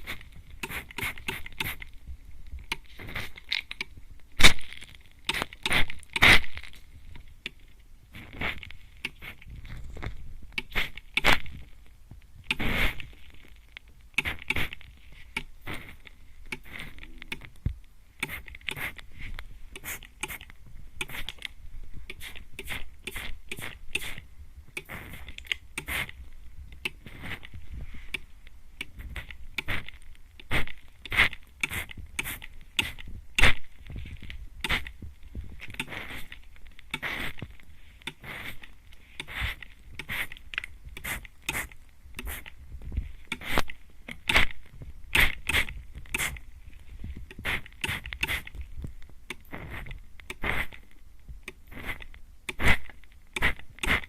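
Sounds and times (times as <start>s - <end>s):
spray bottle spritzing: 0.0s - 1.8s, 41.0s - 42.5s, 47.4s - 48.5s.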